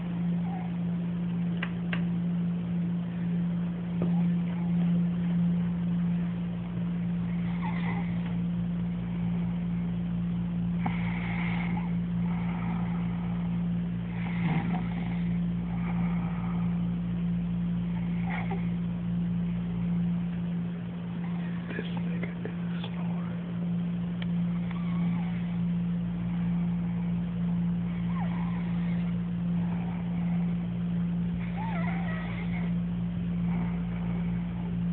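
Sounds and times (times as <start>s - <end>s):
loud steady low hum: 0.0s - 34.9s
person snoring: 7.2s - 8.3s, 10.8s - 16.9s, 17.9s - 18.8s, 24.5s - 32.8s.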